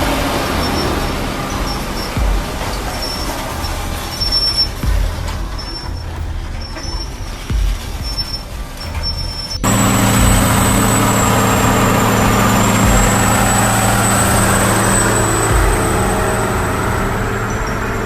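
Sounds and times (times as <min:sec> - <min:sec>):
heavy diesel machinery running: 0:00.0 - 0:18.0.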